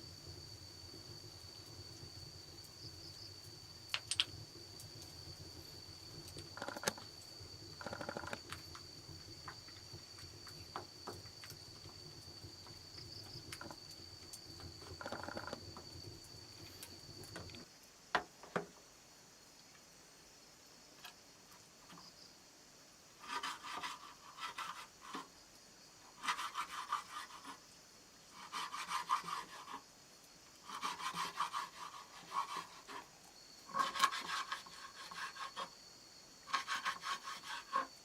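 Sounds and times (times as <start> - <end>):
high-pitched insect buzz: 6.2 - 8.7, 14.8 - 16.0.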